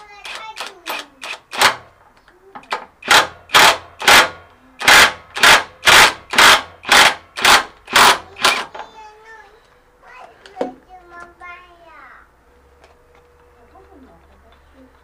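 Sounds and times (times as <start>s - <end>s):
tool rasping on metal: 3.0s - 8.7s.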